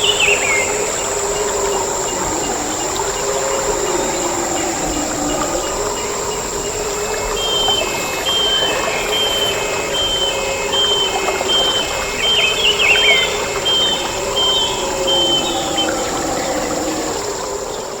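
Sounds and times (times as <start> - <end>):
high insect drone: 0.0 - 18.0
warbled call: 6.9 - 17.3.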